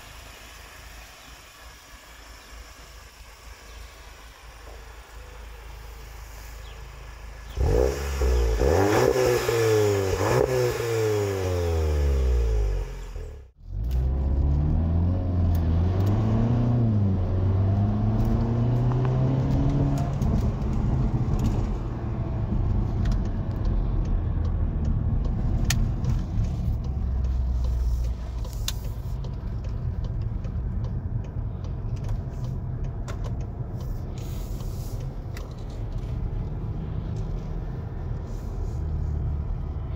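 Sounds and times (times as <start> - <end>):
car engine revving: 7.4 - 28.8.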